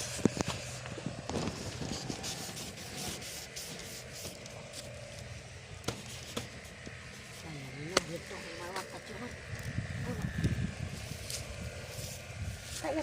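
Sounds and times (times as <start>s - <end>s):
kite fabric rustling: 0.0s - 5.1s.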